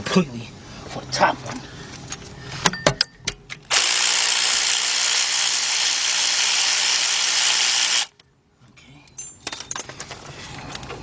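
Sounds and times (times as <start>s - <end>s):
power ratchet running: 3.7s - 8.2s.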